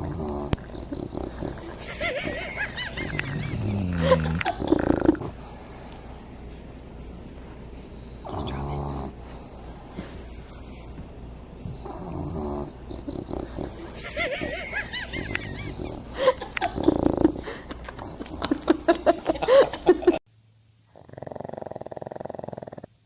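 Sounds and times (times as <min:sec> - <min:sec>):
dog snoring: 0:00.0 - 0:06.0, 0:08.0 - 0:09.7, 0:11.7 - 0:18.5, 0:20.9 - 0:23.0.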